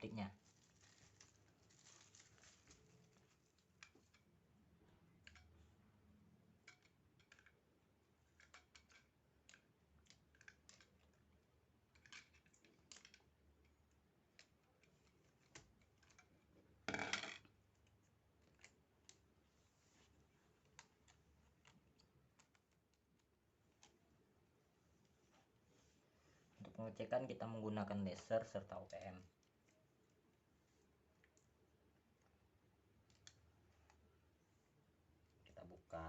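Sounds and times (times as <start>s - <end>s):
light clicks and taps of tools: 3.3s - 5.8s, 8.3s - 16.6s, 20.0s - 24.2s, 31.1s - 34.1s.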